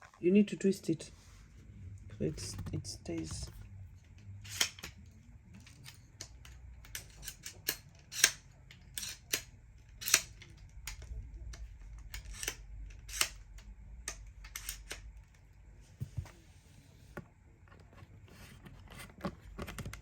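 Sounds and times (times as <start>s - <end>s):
clicks of parts and tools handled: 2.4s - 13.4s, 14.0s - 15.4s.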